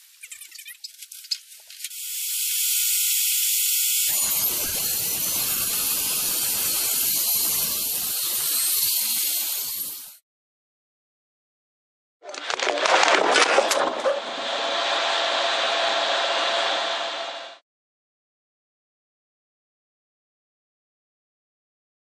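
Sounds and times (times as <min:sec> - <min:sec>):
electric saw running: 0:02.0 - 0:10.0
saw blade cutting wood: 0:04.1 - 0:10.1.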